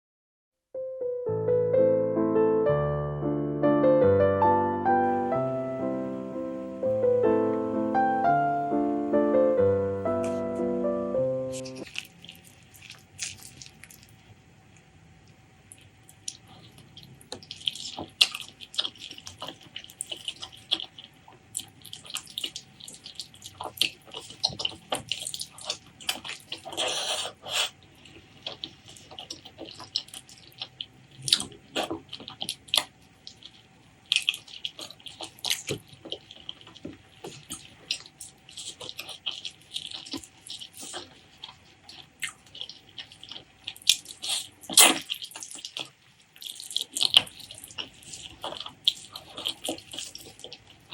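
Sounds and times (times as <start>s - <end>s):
wet chewing and mouth sounds: 11.6s - 50.9s.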